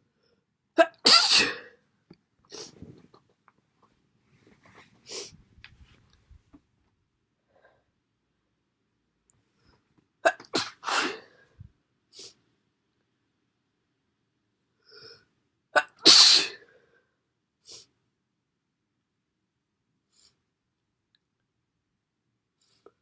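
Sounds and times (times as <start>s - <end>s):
person sneezing: 0.8s - 1.7s, 10.3s - 11.3s, 15.8s - 16.7s.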